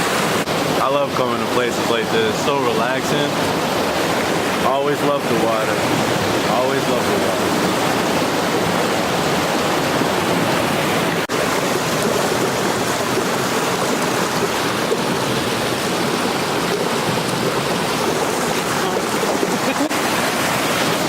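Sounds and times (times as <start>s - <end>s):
river water rushing: 0.0s - 21.0s.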